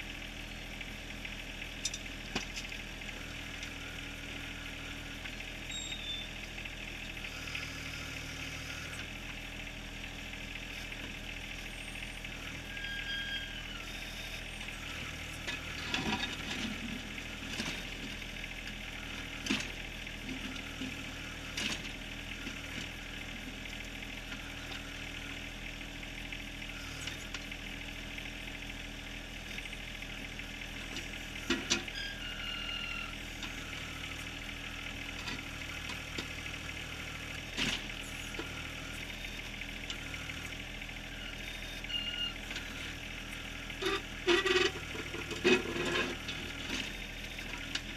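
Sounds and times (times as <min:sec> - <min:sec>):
diesel tractor engine running: 0:00.0 - 0:47.9.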